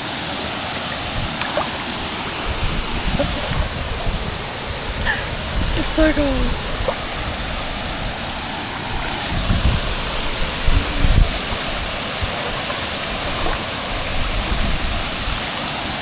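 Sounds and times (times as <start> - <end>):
waterfall roaring: 0.0 - 16.0.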